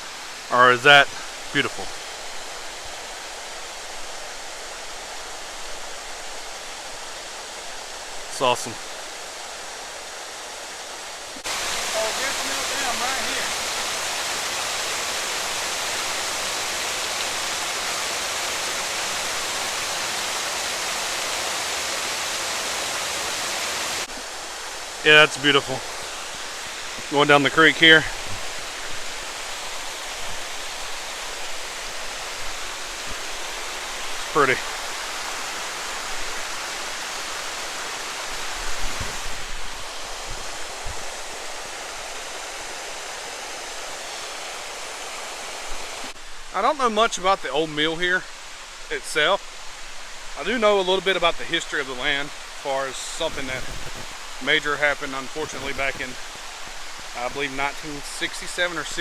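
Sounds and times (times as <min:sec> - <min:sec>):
water rushing over dam: 0:00.0 - 0:59.0.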